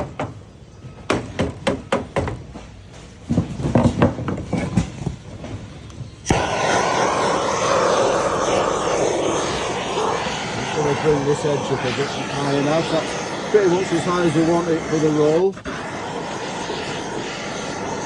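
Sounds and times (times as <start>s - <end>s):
gas torch hissing: 6.2s - 18.0s
gas torch lighting pop: 6.2s - 18.0s.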